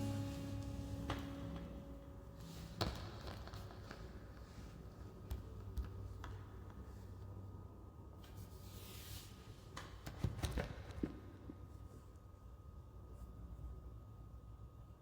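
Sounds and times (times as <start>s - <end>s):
low steady hum: 0.0s - 8.1s.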